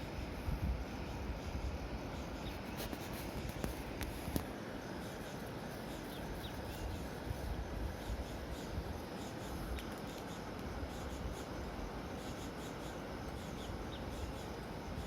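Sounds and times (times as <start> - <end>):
river rushing hiss: 0.0 - 15.0
wind gusts on microphone: 0.1 - 4.4.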